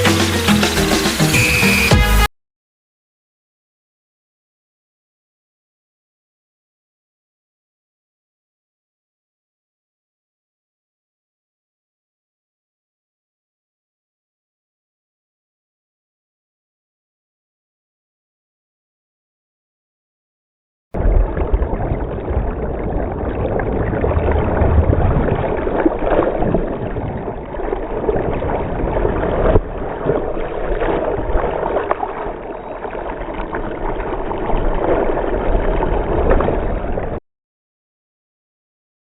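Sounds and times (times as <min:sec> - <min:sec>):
sea water rushing and splashing: 0:00.0 - 0:02.3, 0:21.0 - 0:37.2
wind rumble on microphone: 0:21.0 - 0:37.2.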